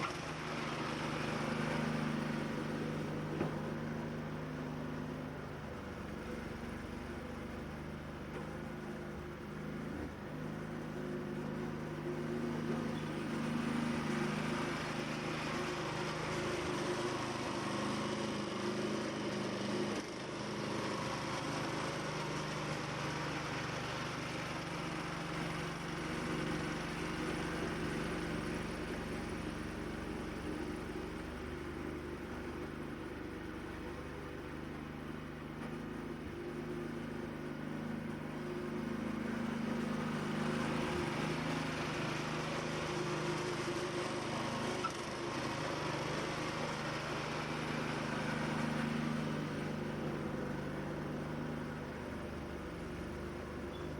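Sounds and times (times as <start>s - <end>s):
engine running steadily: 0.0s - 53.9s.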